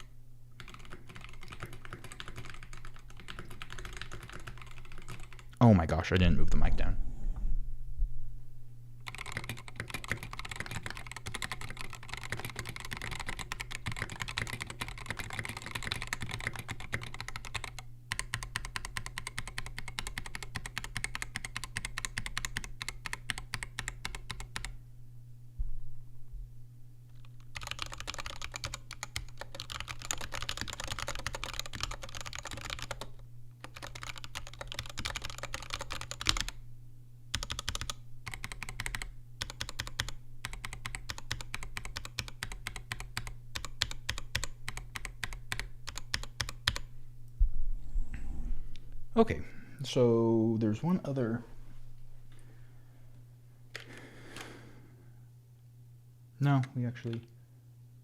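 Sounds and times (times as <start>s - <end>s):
fast typing on mechanical keyboard: 0.0s - 5.6s, 9.0s - 24.8s, 27.1s - 36.6s, 37.3s - 46.9s
steady low hum: 0.0s - 58.0s.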